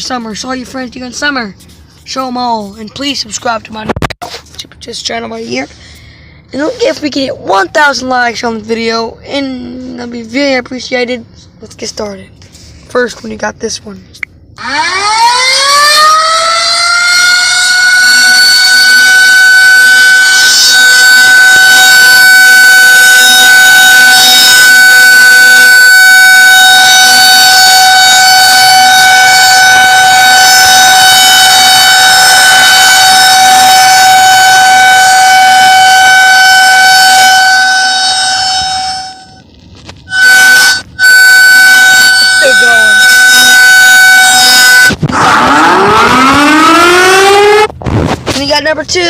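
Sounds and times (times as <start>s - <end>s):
warning siren: 14.5s - 47.8s.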